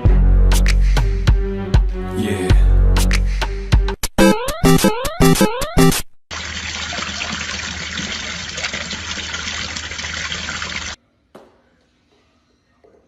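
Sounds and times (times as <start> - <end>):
electronic music with rising notes: 0.0 - 6.2.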